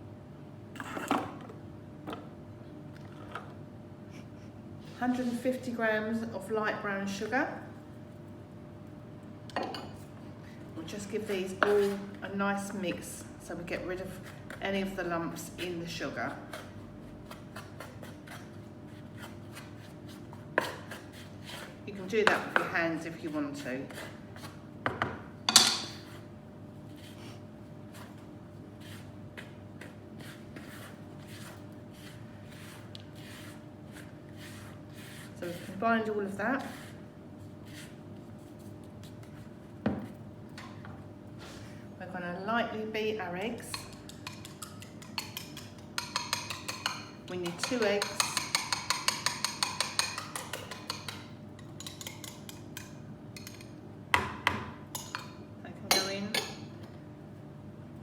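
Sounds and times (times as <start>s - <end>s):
spoon scraping dry mix in bowl: 11.0s - 24.6s, 26.9s - 39.6s, 43.4s - 53.8s
whisk beating eggs in a bowl: 43.5s - 53.6s.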